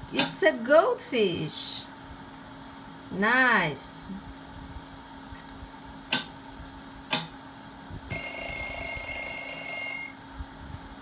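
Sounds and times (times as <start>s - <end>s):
high electronic ring: 8.1s - 10.2s.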